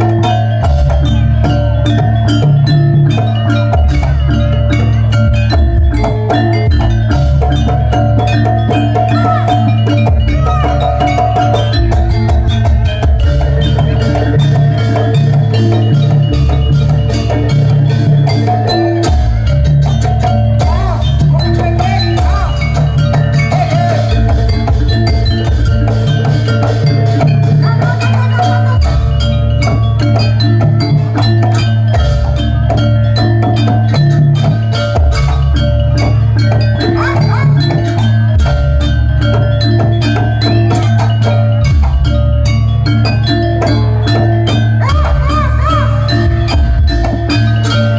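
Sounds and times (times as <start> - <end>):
drums struck in fast rhythm: 0.0 - 47.9
tuned mallet percussion: 0.0 - 47.9.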